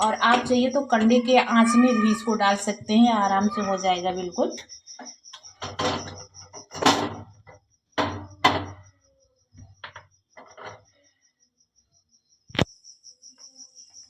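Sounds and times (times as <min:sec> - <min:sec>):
cricket chirping: 0:00.0 - 0:14.0
knocks and clatters on stove: 0:05.6 - 0:08.8.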